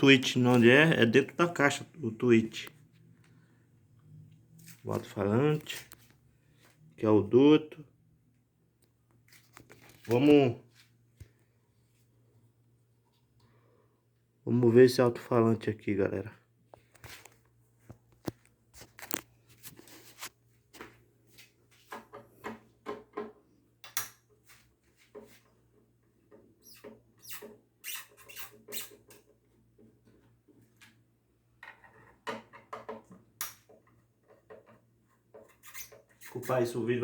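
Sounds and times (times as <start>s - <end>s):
tools clicking and scraping: 26.3s - 29.4s, 33.4s - 36.5s.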